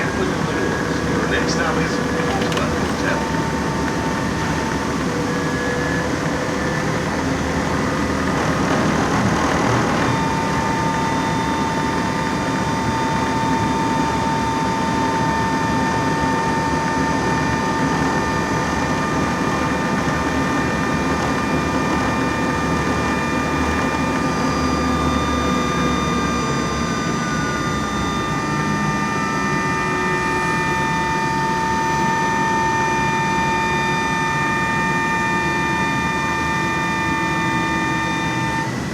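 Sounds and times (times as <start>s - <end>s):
road and cabin rumble: 0.0s - 11.9s
electric motor whine: 0.0s - 38.9s.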